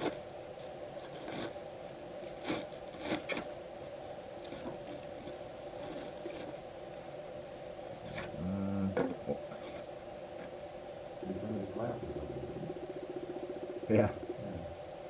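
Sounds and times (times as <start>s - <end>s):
props scraping and clicking: 0.0s - 8.4s
steady hum: 0.0s - 15.0s.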